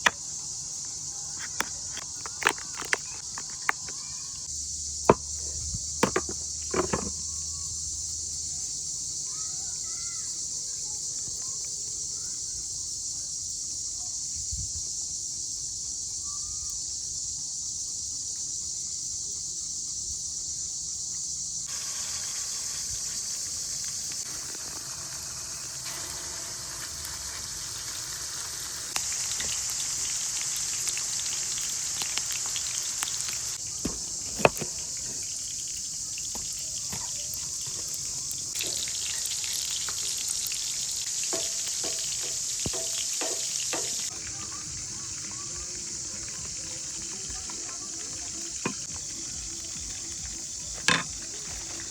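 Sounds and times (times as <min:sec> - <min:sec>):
high-pitched insect drone: 0:00.0 - 0:51.9
faint bird chirps: 0:16.1 - 0:16.9.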